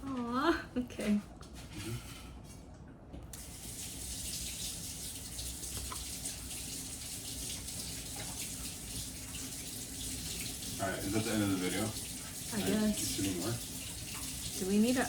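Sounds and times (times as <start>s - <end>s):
water running from a tap: 3.3s - 15.0s.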